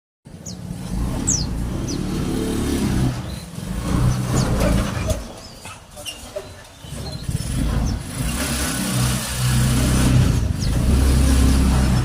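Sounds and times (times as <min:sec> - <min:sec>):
vehicle engine running: 0:00.3 - 0:05.4, 0:06.8 - 0:12.0
songbird chirps: 0:00.3 - 0:08.2.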